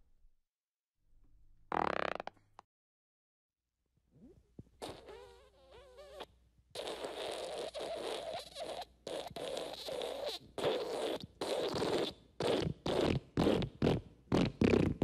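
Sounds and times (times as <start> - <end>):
fart sound effects: 1.7 - 2.4, 4.2 - 15.0.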